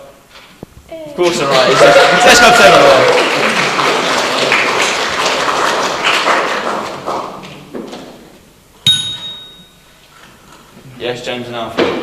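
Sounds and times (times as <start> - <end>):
audience clapping: 1.2 - 7.8
sharp knock: 8.9 - 9.6.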